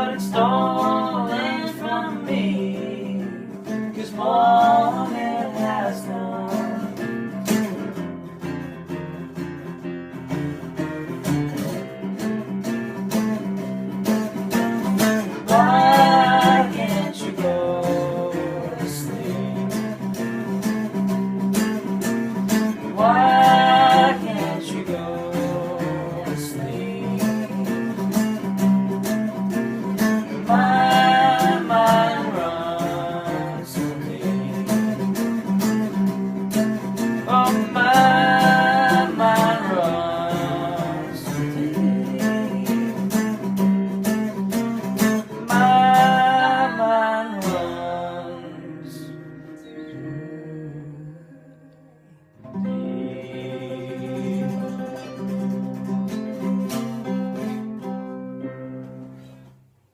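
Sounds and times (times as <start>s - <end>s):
person singing: 0.0s - 7.3s, 15.0s - 20.6s, 22.4s - 28.4s, 30.0s - 35.6s, 37.0s - 43.5s, 45.2s - 56.5s
acoustic guitar picked and strummed: 0.0s - 59.9s.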